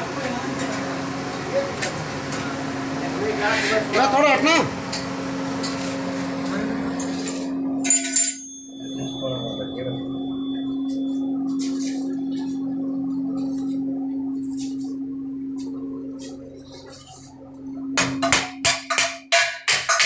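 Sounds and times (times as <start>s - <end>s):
steady machine hum: 0.0s - 20.0s
metal clang ringing: 7.8s - 10.0s.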